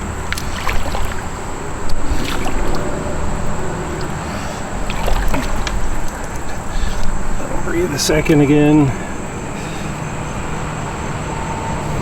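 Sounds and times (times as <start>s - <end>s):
small splashes: 0.0s - 7.4s
water lapping and trickling: 0.0s - 12.0s.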